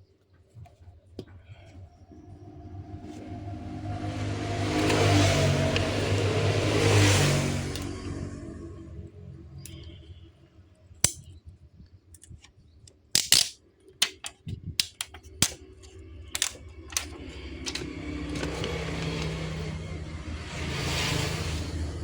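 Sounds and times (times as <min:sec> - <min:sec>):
steady low hum: 0:01.3 - 0:10.5
clicks and taps of small tools: 0:12.2 - 0:15.6, 0:16.4 - 0:19.3.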